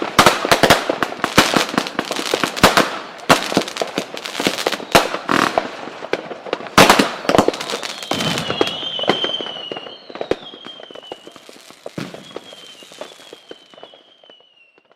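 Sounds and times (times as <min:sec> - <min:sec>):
firework pops and crackles: 0:00.0 - 0:14.9
high wavering whistle: 0:07.9 - 0:11.4, 0:12.0 - 0:14.9.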